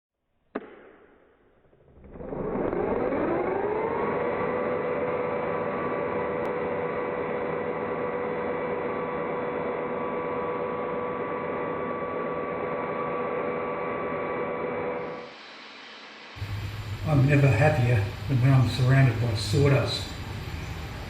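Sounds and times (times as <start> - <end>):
power tool motor humming: 2.0 - 14.3, 14.9 - 19.2.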